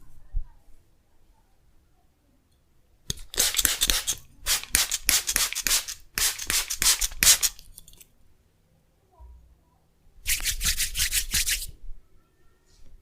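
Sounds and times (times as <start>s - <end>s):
hands rubbing: 10.3s - 11.7s.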